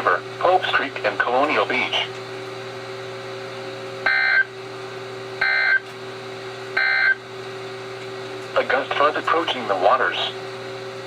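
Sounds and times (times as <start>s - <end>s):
low steady signal hum: 4.0s - 5.9s, 6.6s - 7.8s, 8.4s - 10.6s.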